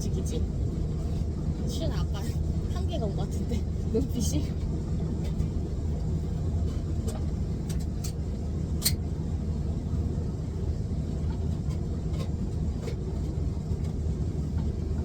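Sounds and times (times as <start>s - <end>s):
airliner cabin rumble: 0.0s - 15.0s.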